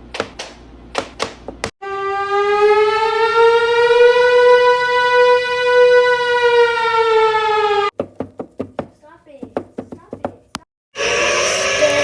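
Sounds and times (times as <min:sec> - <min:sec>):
siren wail: 0:01.8 - 0:07.9, 0:11.0 - 0:12.0.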